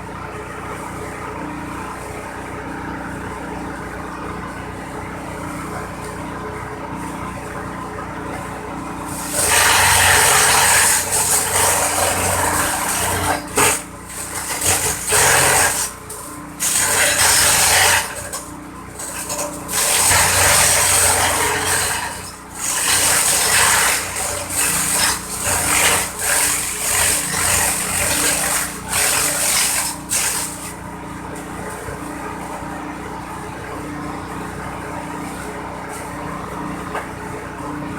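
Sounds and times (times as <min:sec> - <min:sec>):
engine drone: 0:00.0 - 0:37.9
stalks shredding in chopper: 0:09.1 - 0:30.8.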